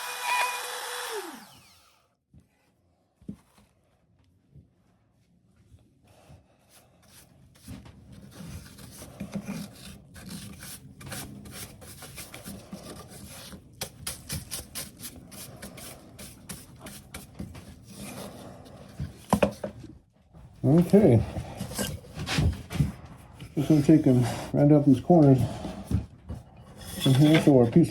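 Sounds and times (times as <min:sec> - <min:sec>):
hand scraping wood: 0:06.5 - 0:19.9, 0:20.6 - 0:27.9.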